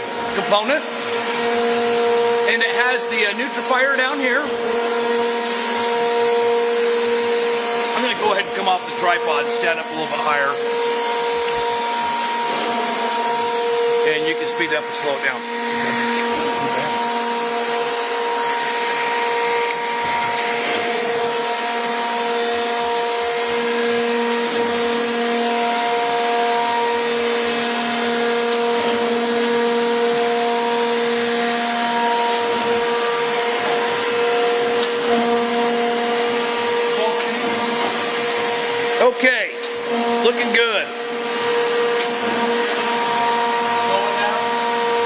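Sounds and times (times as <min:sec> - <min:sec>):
grinder machine hum: 0:00.0 - 0:45.0.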